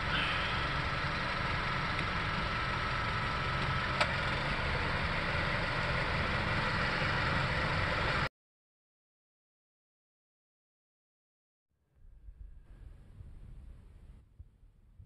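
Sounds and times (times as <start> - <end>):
car engine running: 0.0 - 8.3.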